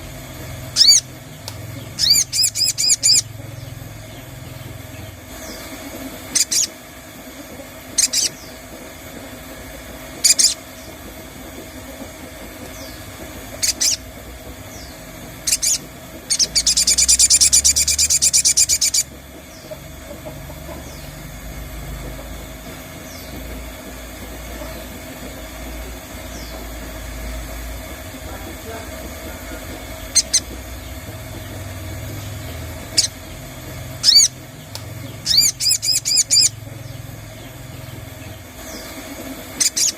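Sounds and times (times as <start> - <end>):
bird trilling: 0.0 - 39.9
bird calling sharp notes: 0.6 - 6.8, 7.9 - 8.6, 10.1 - 11.0, 12.6 - 21.2, 29.3 - 39.9.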